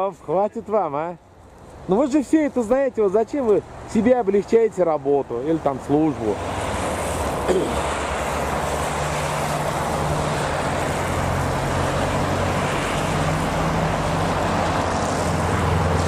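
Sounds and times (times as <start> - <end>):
road traffic noise: 0.0 - 16.0
vehicle engine hum: 5.4 - 16.0.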